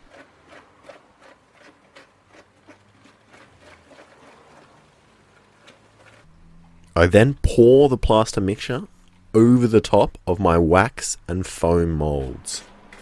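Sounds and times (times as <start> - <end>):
scraping and tapping while stirring: 0.0 - 6.9, 12.2 - 13.0.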